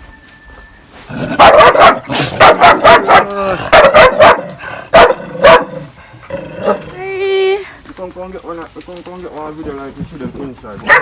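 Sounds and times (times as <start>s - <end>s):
dog barking: 1.3s - 5.9s.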